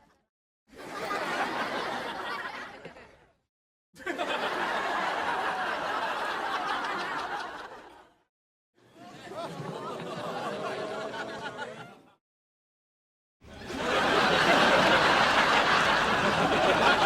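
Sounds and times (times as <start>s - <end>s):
canned audience laughter: 0.7s - 3.4s, 4.0s - 8.2s, 8.9s - 12.2s, 13.5s - 17.0s.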